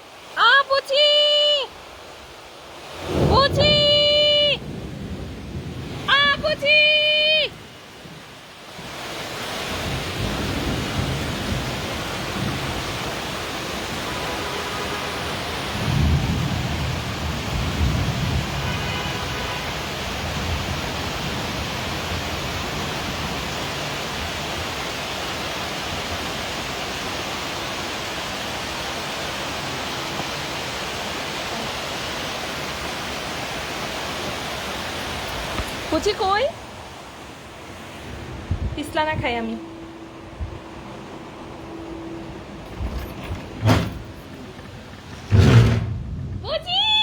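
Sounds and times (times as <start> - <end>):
heavy rain pouring: 0.0 - 47.0
low thunder rumble: 3.0 - 6.7, 9.8 - 13.6, 15.6 - 18.6, 42.0 - 46.7.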